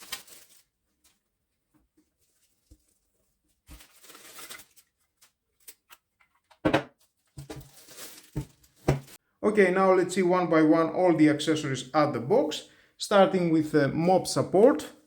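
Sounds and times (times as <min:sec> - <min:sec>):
packaging rustle: 0:00.0 - 0:01.2, 0:02.2 - 0:06.1, 0:07.0 - 0:09.2.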